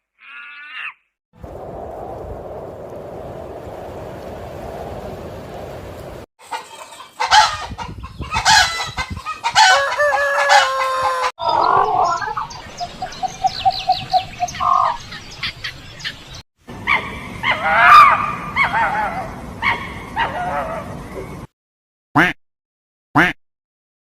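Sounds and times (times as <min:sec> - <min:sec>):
chickens clucking: 0:06.4 - 0:12.6
rooster crowing: 0:09.5 - 0:11.6.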